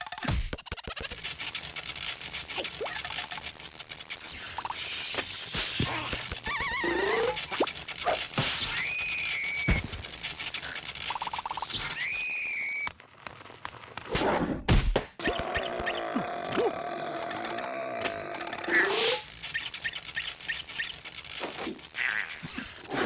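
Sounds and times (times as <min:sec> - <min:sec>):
rising whistle-like squeaks: 0:08.6 - 0:09.8, 0:11.6 - 0:12.9.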